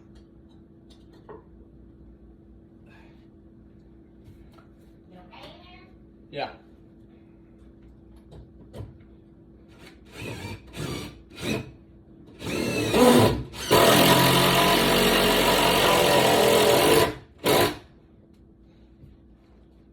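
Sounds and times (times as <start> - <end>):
electric power tool running: 12.4 - 17.8.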